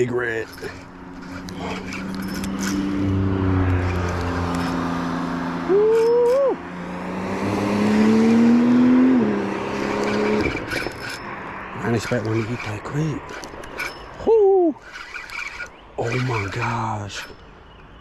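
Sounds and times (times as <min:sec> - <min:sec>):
vehicle engine running: 0:00.0 - 0:13.8
man whooping: 0:05.6 - 0:06.6, 0:14.2 - 0:14.8.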